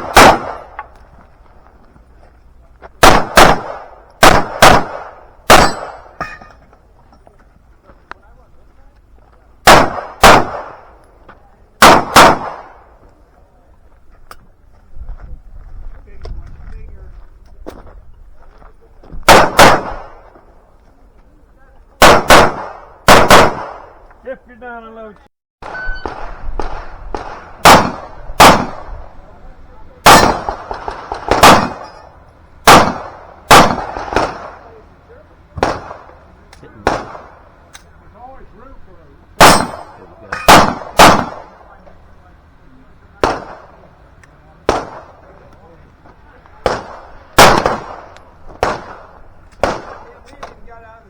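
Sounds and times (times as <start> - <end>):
pistol shots with echo: 0.0 - 0.8, 3.0 - 6.4, 9.6 - 11.0, 11.8 - 12.9, 19.2 - 20.2, 22.0 - 23.9, 25.6 - 28.9, 30.0 - 34.8, 35.6 - 36.2, 36.8 - 37.5, 39.4 - 41.6, 43.2 - 43.9, 44.6 - 45.4, 46.6 - 50.5.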